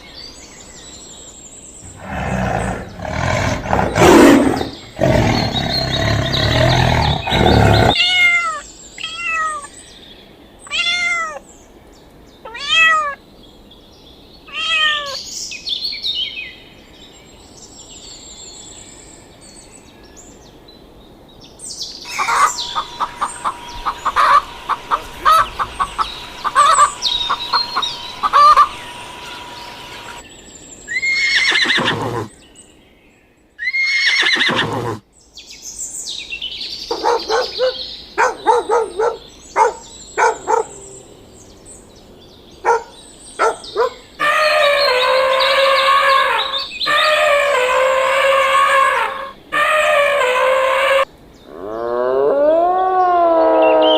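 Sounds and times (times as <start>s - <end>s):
big cat roaring: 1.8s - 8.0s, 22.1s - 30.2s, 31.6s - 32.3s
loud harsh animal calls: 1.8s - 8.5s, 22.1s - 30.2s, 30.9s - 32.3s, 33.6s - 35.0s, 44.2s - 53.9s
short arched animal calls: 22.1s - 30.2s
steady tone: 22.1s - 30.2s.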